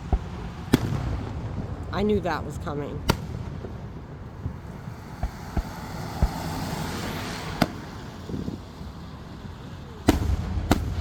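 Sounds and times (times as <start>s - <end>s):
fireworks bangs: 0.0s - 11.0s
fireworks rushing hiss: 3.0s - 11.0s.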